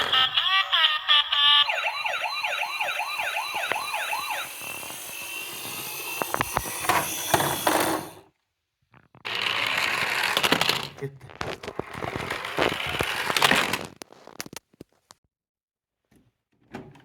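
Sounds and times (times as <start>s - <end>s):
toy siren warbling: 0.0s - 8.1s.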